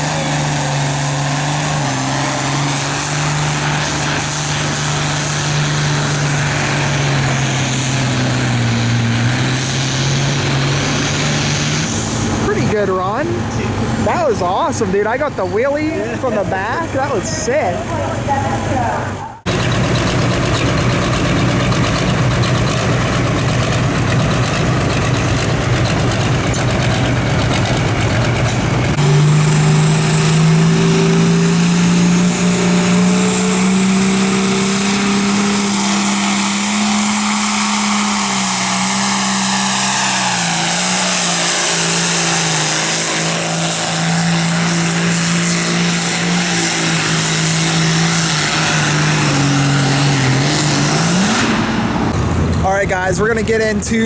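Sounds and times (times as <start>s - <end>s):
diesel engine at high revs: 0.0s - 54.0s.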